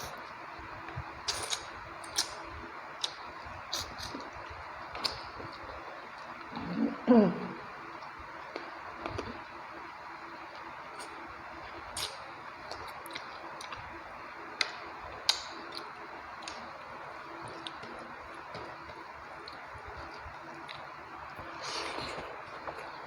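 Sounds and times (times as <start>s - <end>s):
wet chewing mouth clicks: 1.3s - 2.4s.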